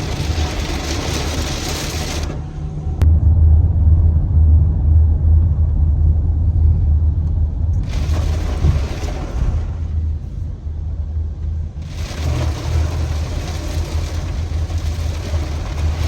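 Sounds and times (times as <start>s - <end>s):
heavy rain hissing: 0.0s - 2.6s, 7.8s - 10.4s, 11.8s - 16.0s
loud low rumble: 0.0s - 16.0s.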